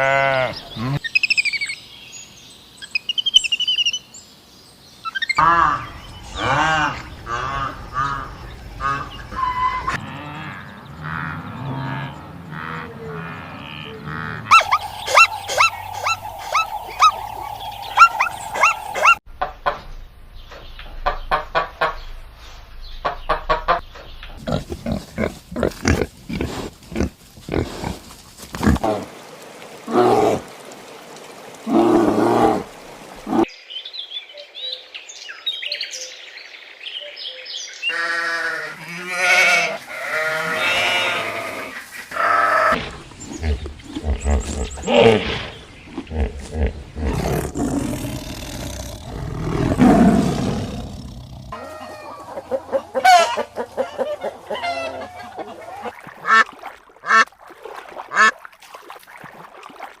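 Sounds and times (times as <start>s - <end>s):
animal calls: 5.1s - 19.2s.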